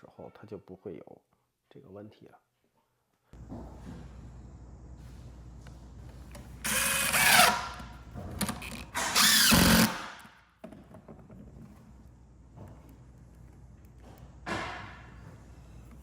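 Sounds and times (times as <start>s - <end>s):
power drill driving screws: 6.6s - 10.3s.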